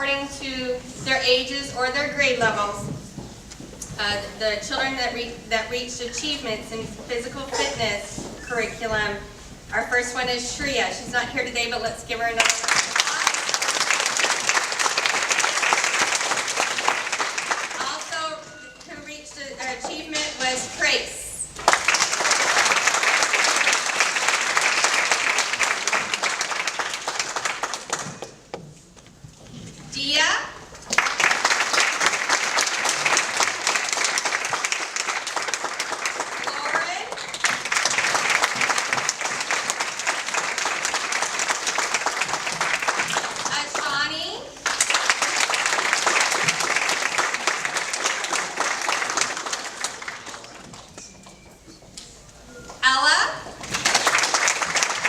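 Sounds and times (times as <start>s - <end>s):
audience applauding: 12.4s - 18.8s, 21.6s - 28.5s, 30.9s - 44.0s, 44.6s - 51.0s, 53.6s - 55.0s.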